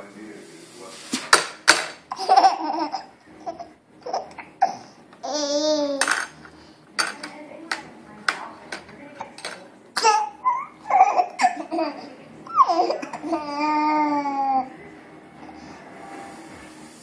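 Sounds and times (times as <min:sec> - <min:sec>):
baby laughing and babbling: 0:02.1 - 0:06.1, 0:10.0 - 0:14.7
baby squealing: 0:10.0 - 0:11.6.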